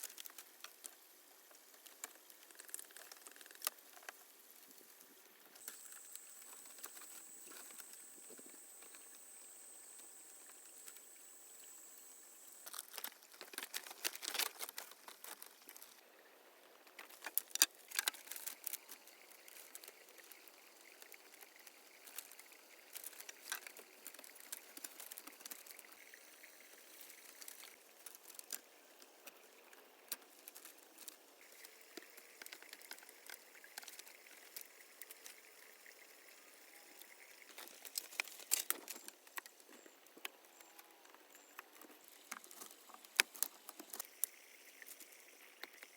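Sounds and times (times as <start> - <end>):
rustling: 12.5 - 16.0.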